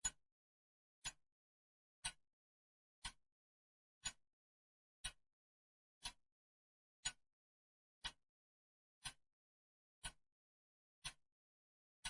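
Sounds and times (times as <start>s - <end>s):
clock ticking: 8.0s - 8.2s.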